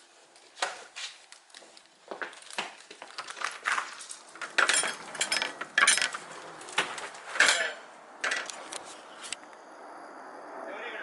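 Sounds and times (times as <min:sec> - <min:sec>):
hard objects clinking and clattering: 0:02.3 - 0:08.6.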